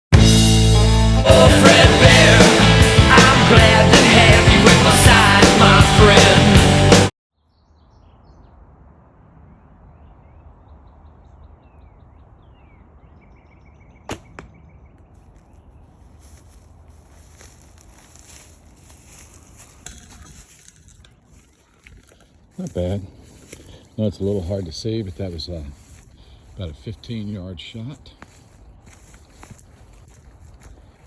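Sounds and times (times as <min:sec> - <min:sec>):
loud music: 0:00.1 - 0:07.1
arrow hitting target: 0:14.0 - 0:14.6.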